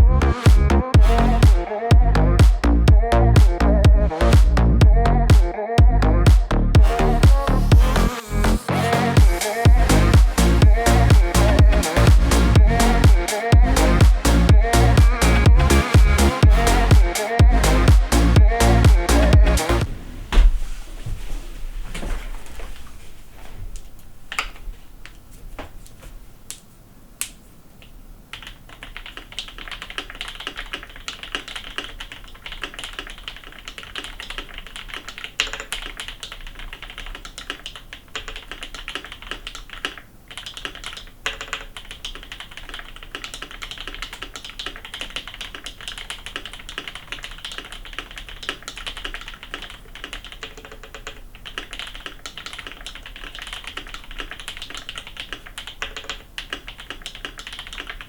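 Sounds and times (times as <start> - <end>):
mechanical keyboard typing: 28.3 - 58.0.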